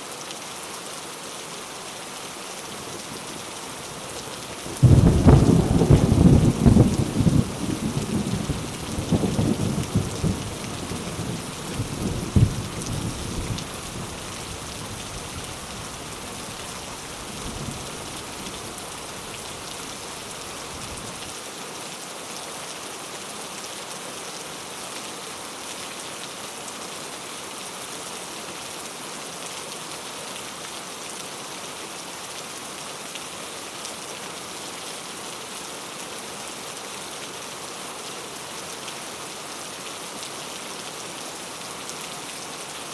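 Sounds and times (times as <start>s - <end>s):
steady rain falling: 0.0s - 42.9s
rolling thunder: 4.7s - 10.6s.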